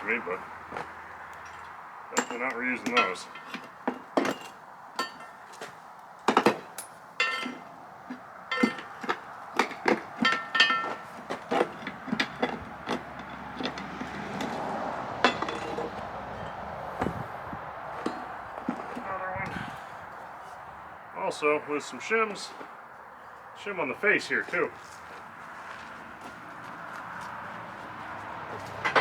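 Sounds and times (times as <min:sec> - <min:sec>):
metal-on-metal taps and clinks: 0:00.7 - 0:17.3, 0:17.9 - 0:19.2, 0:28.6 - 0:29.0.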